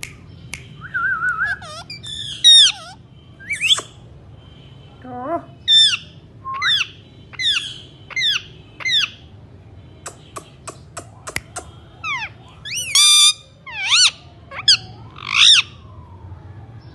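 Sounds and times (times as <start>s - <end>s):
sharp bird clicks: 0.0s - 2.3s, 3.5s - 4.0s, 10.0s - 11.8s
parakeet screeching: 1.4s - 4.0s, 5.7s - 9.2s, 12.0s - 15.8s.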